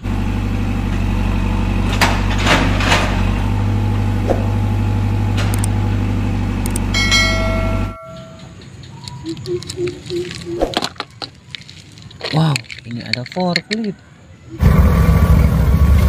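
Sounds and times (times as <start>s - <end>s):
clicks: 5.4s - 5.8s, 6.6s - 6.9s, 8.1s - 14.0s
toy engine idling rumble: 5.5s - 16.0s.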